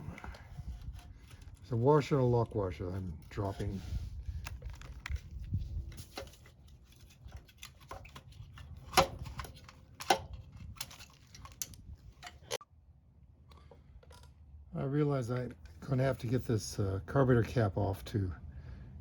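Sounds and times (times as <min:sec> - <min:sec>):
metal parts and hand tools clicking: 0:00.0 - 0:12.6.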